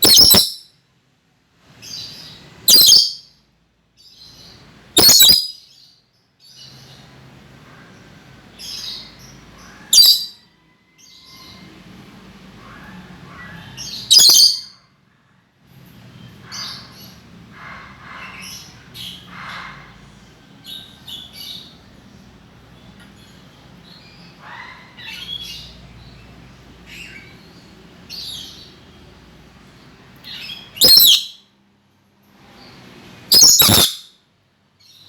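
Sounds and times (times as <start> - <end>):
parrot chattering calls: 0.0 - 0.6, 2.7 - 3.3, 5.0 - 5.6, 8.6 - 10.4, 12.6 - 14.9, 16.4 - 21.7, 24.1 - 25.8, 30.3 - 31.4, 33.3 - 34.1
parrot harsh screeches: 0.0 - 0.6, 30.8 - 31.3, 33.3 - 34.1.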